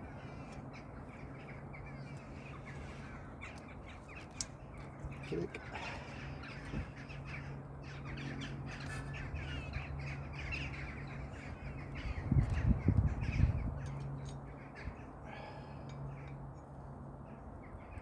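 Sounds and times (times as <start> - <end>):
steady low hum: 0.0 - 18.0
crows cawing: 5.6 - 12.3, 14.8 - 16.3.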